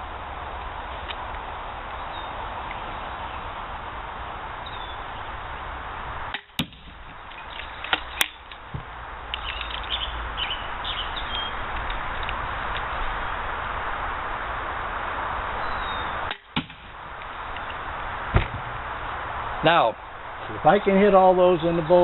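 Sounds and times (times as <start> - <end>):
outdoor background noise: 0.0 - 22.0
sharp crack: 6.3 - 10.0, 16.2 - 19.8
crossbow shot snap: 16.3 - 17.0.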